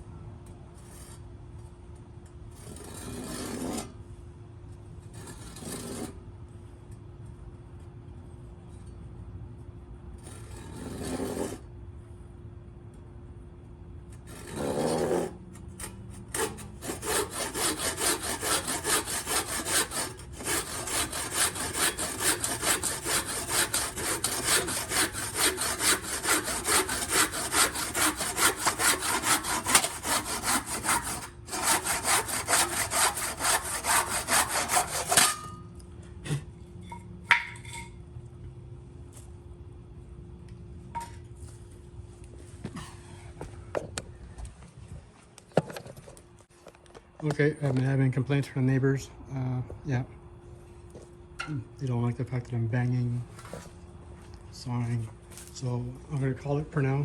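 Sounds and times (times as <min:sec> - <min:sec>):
handsaw cutting wood: 0:14.3 - 0:35.4.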